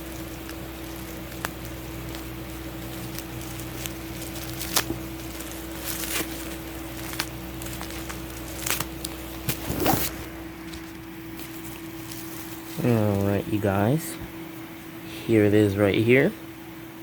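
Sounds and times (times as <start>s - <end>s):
packaging clicks and crinkles: 0.0s - 13.4s
steady low hum: 0.0s - 17.0s.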